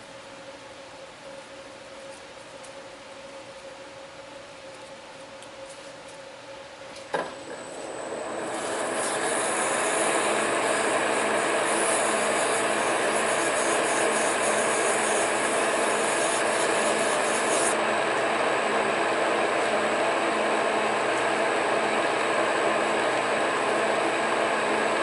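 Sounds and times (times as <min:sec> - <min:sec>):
lathe running: 0:07.4 - 0:25.0
rubbing hiss on workpiece: 0:08.6 - 0:17.8.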